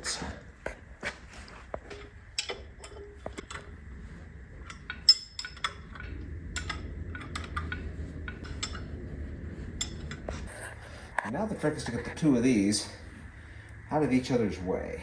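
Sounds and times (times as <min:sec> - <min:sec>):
bolts and wrenches clinking: 0:01.1 - 0:10.6
low rumble: 0:03.1 - 0:15.0.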